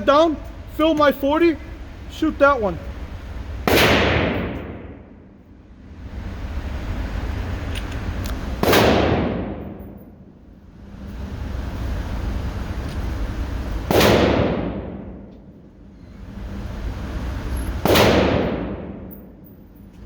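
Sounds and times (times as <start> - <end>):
handgun shots: 3.7 - 4.8, 8.6 - 9.7, 13.9 - 14.7, 17.8 - 18.7.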